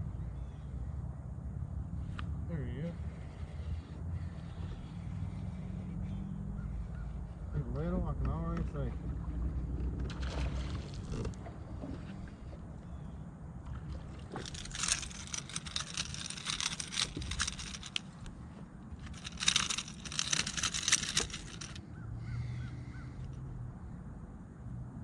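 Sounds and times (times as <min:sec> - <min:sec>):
water splashing and rattling: 0:09.2 - 0:11.4, 0:13.8 - 0:18.3, 0:19.0 - 0:21.8.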